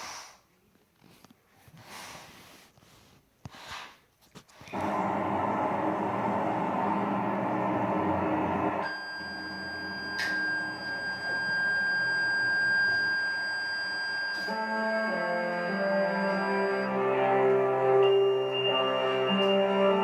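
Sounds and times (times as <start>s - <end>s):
high pure electronic tone: 4.8s - 20.0s
low sustained musical tones: 14.2s - 20.0s.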